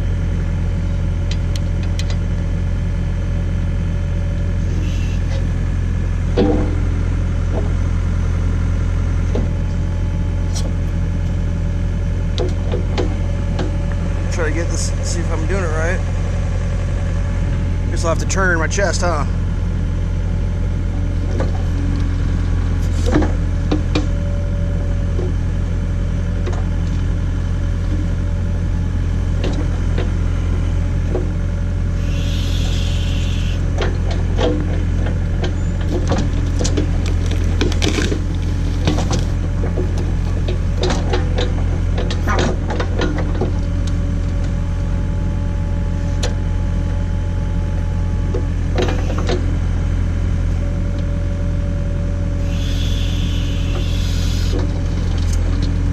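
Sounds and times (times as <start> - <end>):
diesel engine running under load: 0.0 - 55.9.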